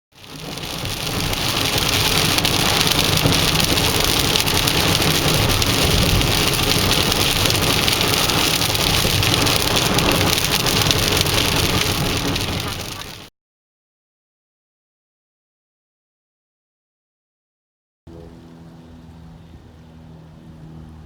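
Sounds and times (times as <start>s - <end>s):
heavy rain on a car: 0.1s - 13.3s
low rumble of car: 0.2s - 13.3s, 18.1s - 21.0s.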